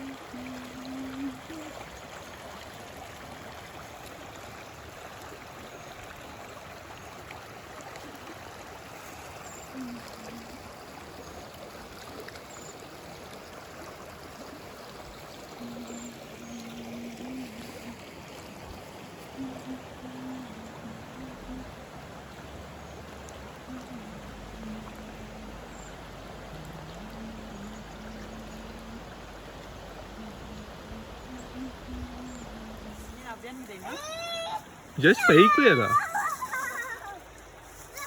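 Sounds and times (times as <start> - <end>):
creek water running: 0.0 - 38.0
faint low wavering tone: 23.7 - 33.2.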